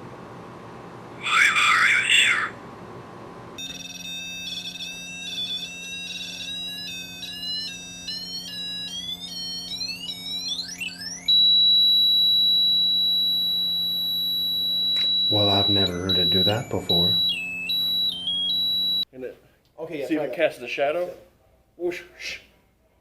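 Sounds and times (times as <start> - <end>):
faint steady hum: 0.0 - 23.0
electronic music box tune: 3.6 - 19.0
loud high-pitched beep: 11.3 - 19.0.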